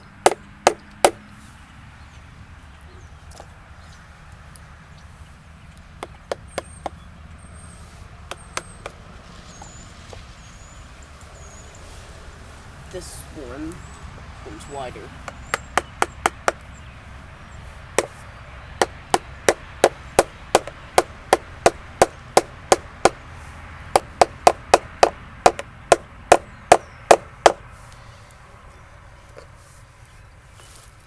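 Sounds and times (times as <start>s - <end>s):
mallet knocking chisel into log: 15.3s - 16.6s, 24.0s - 27.6s.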